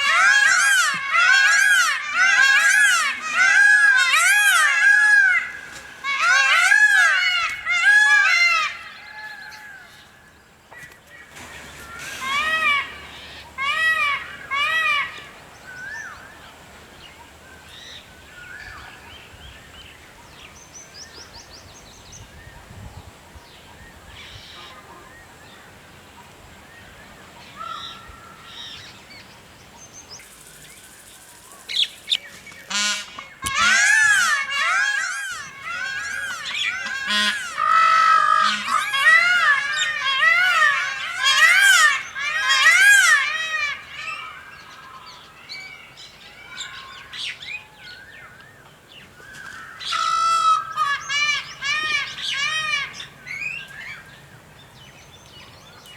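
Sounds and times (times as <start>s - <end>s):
peacock honking calls: 0.0s - 10.0s, 11.3s - 16.2s, 32.6s - 45.7s, 49.3s - 54.0s.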